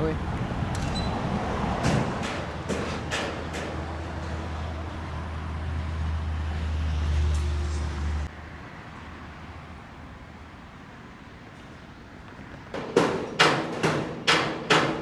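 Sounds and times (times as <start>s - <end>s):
passing traffic rumble: 0.0s - 12.8s
steady traffic hum: 0.0s - 15.0s.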